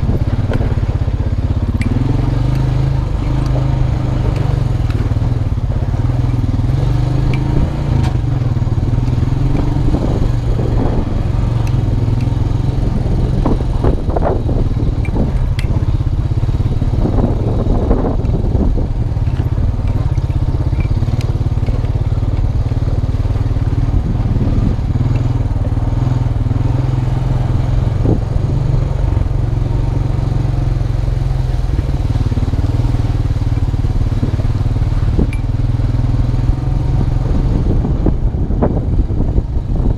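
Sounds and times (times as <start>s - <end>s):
quad bike engine running: 0.0s - 39.9s
knocks and rattles: 18.1s - 23.0s.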